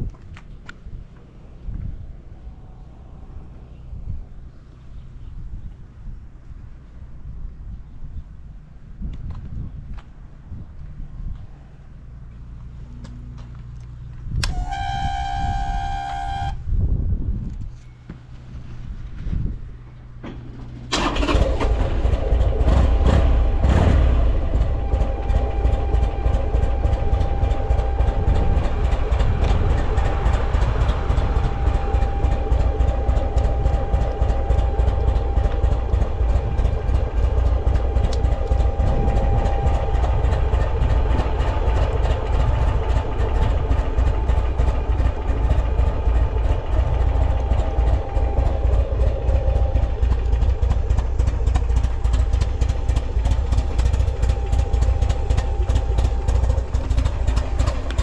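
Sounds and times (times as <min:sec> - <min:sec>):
motorcycle engine idling: 0:21.2 - 0:58.0.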